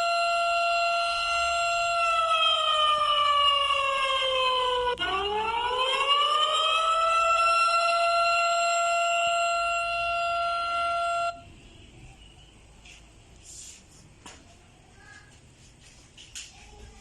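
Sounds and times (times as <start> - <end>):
siren wailing: 0.0 - 11.5.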